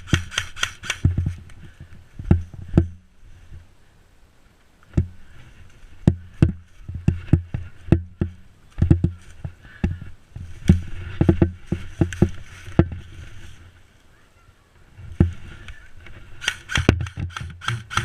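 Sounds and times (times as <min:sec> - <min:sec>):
sharp clicks and thumps: 0:00.0 - 0:03.0, 0:06.0 - 0:13.1, 0:15.1 - 0:18.0
rustling hiss: 0:00.0 - 0:18.0.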